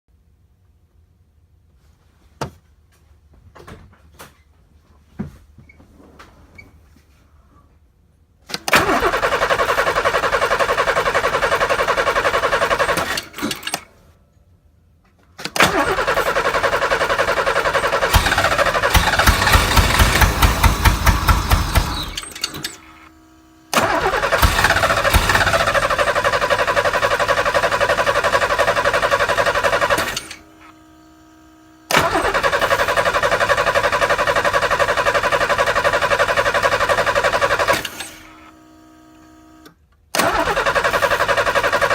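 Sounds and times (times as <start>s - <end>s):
starter cranking engine: 8.5s - 13.9s, 15.6s - 23.1s, 23.7s - 30.7s, 31.9s - 38.5s, 40.2s - 41.9s
engine firing in uneven pulses: 8.7s - 13.6s, 15.6s - 38.2s.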